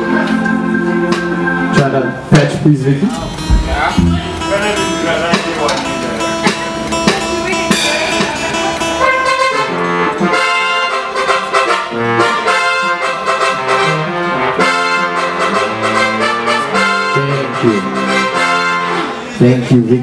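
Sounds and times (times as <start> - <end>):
sharp struck or strummed sounds: 3.1 - 9.2
brass horn section playing: 3.1 - 19.3.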